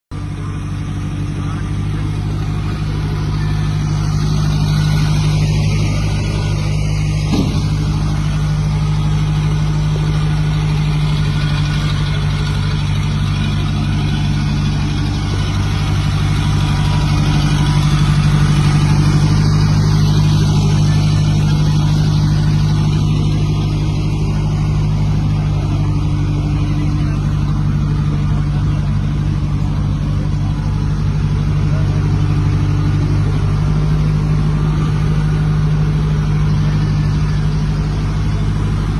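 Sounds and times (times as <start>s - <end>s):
diesel engine running: 0.1s - 38.9s
short knock: 7.2s - 8.1s.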